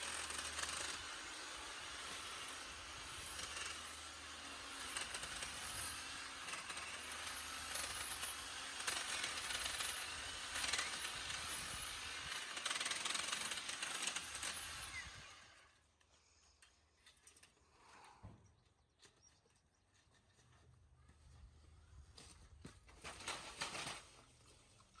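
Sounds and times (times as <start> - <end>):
hedge trimmer cutting stems: 22.9 - 24.3.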